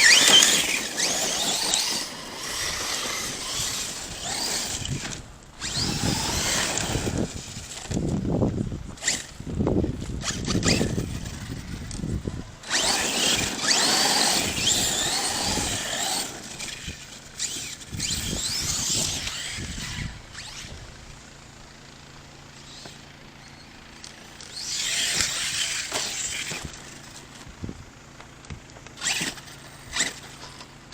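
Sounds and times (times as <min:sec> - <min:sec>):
electric motor whining: 0:00.0 - 0:21.2, 0:22.3 - 0:30.9
low rumbles: 0:00.0 - 0:22.7
tires scrabbling on dirt: 0:00.0 - 0:30.9.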